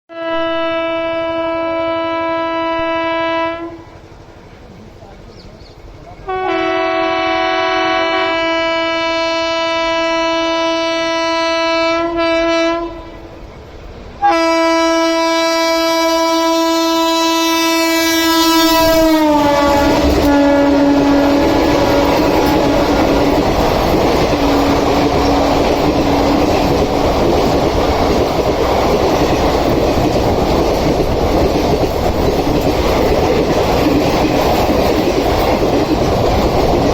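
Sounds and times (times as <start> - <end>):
locomotive horn blasts: 0.1 - 4.0, 6.2 - 13.3, 14.2 - 23.3
train wheels clattering on rails: 18.5 - 36.9.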